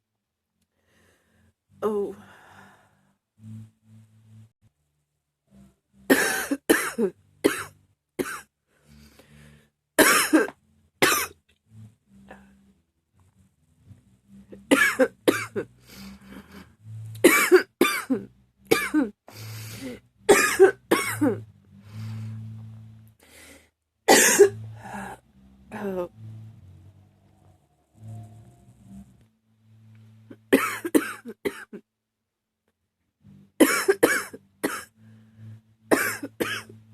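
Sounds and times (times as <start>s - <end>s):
woman coughing: 6.1s - 8.4s, 10.0s - 11.4s, 14.7s - 15.7s, 17.2s - 19.2s, 20.3s - 21.4s, 24.1s - 24.6s, 30.4s - 31.8s, 33.6s - 34.9s, 35.9s - 36.7s.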